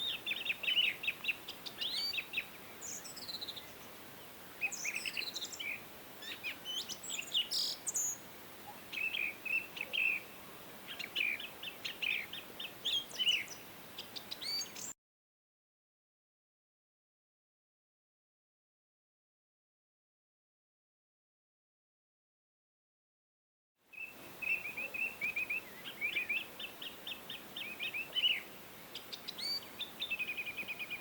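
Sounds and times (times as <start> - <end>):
faint steady hiss: 0.0 - 15.0, 23.8 - 31.0
songbirds chirping: 0.0 - 15.0, 23.9 - 31.0.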